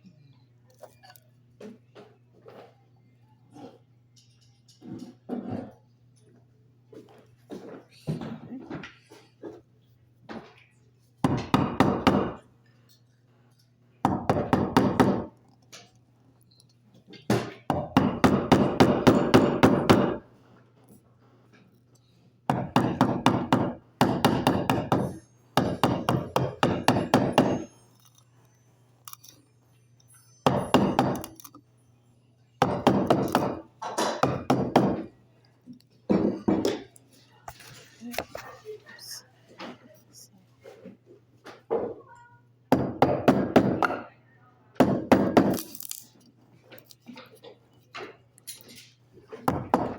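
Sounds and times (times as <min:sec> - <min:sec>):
chisel knocking: 0:22.5 - 0:27.7, 0:32.6 - 0:35.1.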